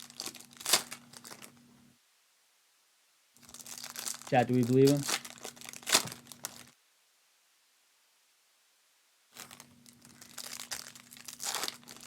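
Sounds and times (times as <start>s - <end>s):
wrapper crinkling: 0.0s - 1.6s, 3.4s - 6.8s, 9.3s - 12.0s
low steady hum: 0.0s - 12.0s.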